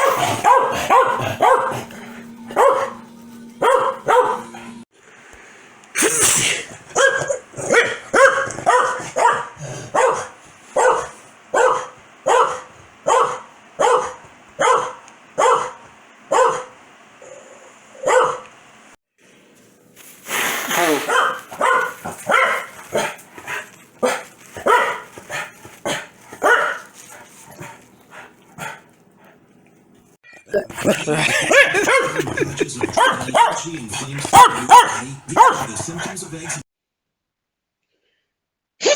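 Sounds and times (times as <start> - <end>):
dog barking: 0.0 - 1.9, 2.5 - 3.0, 3.6 - 4.8, 6.9 - 16.8, 18.0 - 18.5, 20.8 - 27.8, 31.4 - 36.2.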